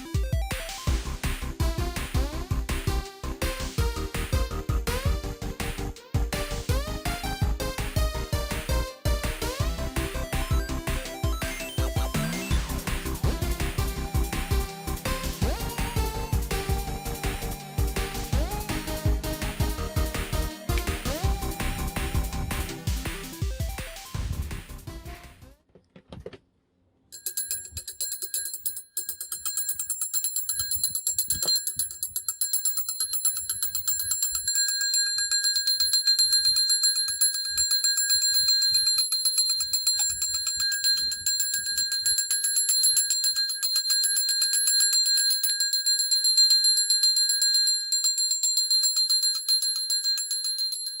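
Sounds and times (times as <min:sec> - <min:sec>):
electric alarm bell ringing: 0:27.2 - 0:51.0.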